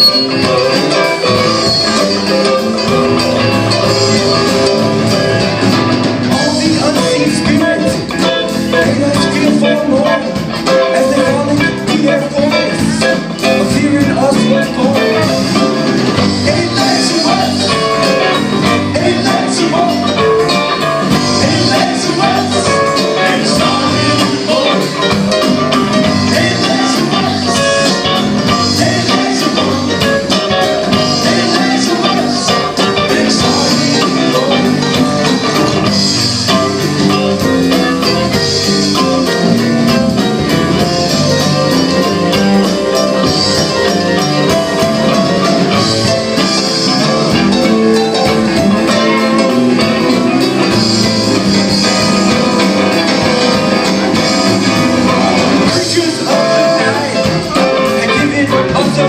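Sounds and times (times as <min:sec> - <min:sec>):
live band playing: 0:00.0 - 0:59.0.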